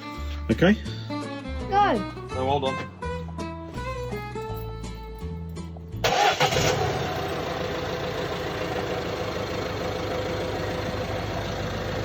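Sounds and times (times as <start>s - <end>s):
van engine starting and idling: 3.7s - 12.0s.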